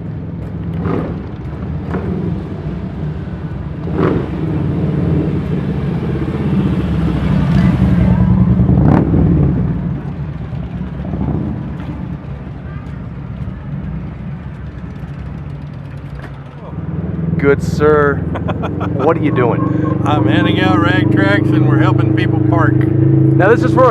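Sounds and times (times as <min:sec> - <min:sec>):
motorcycle engines rumbling: 0:00.0 - 0:23.9
short sharp engine blips: 0:19.0 - 0:21.7.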